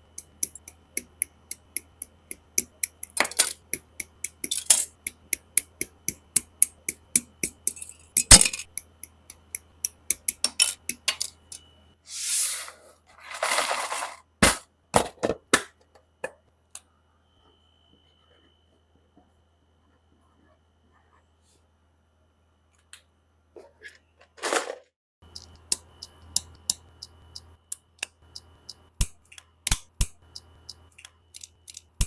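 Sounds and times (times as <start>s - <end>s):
plastic parts clicking and snapping: 6.6s - 11.6s, 29.0s - 30.2s, 30.9s - 32.0s.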